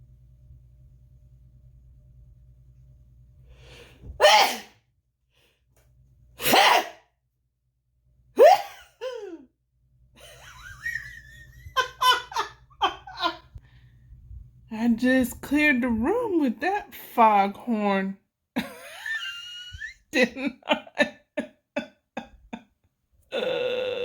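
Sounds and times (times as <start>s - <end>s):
woman sneezing loudly: 4.2s - 4.8s, 6.4s - 7.0s, 8.4s - 9.3s.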